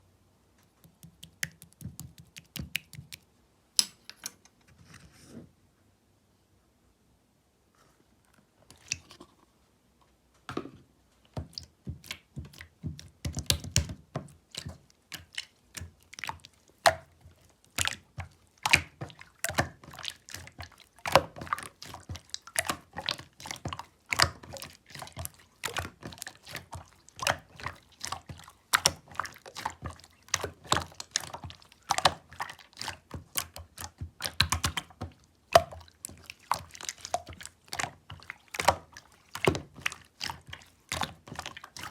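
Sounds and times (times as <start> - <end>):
slime being squished by hand: 11.4 - 41.9.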